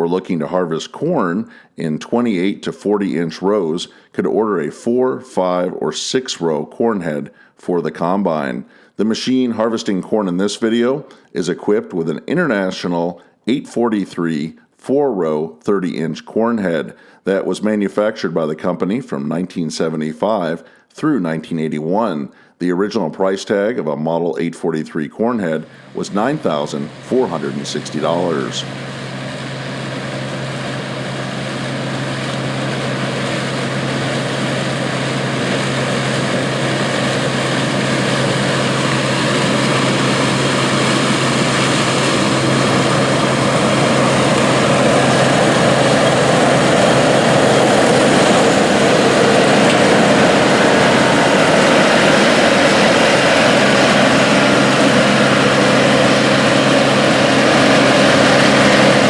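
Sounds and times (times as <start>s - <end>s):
combine harvester running: 25.4s - 59.0s.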